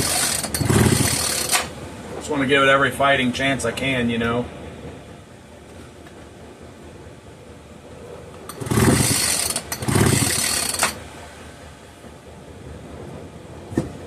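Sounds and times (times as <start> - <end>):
chainsaw starter cord pulls: 0.0 - 1.7, 8.5 - 11.0.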